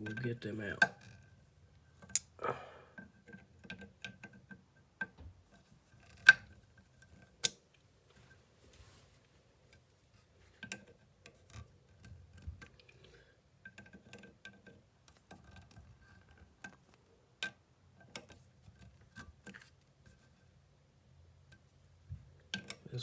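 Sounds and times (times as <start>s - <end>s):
small metal clicks and taps: 6.0s - 7.7s, 13.6s - 19.7s, 22.4s - 22.9s.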